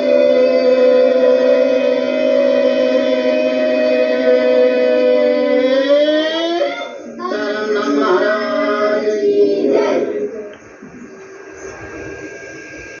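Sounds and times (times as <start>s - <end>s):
devotional group singing: 0.0s - 6.3s.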